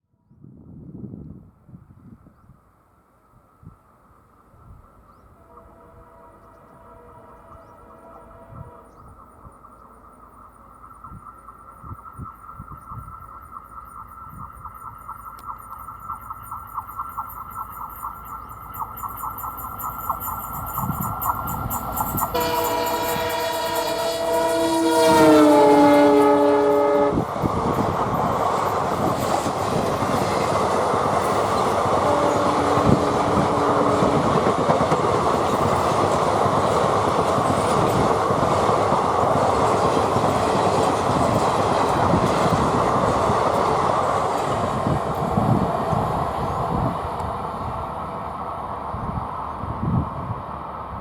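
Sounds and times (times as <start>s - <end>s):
locomotive horn: 5.3s - 9.2s, 22.3s - 27.5s, 31.9s - 34.6s
train wheels clacking on rails: 13.5s - 49.3s.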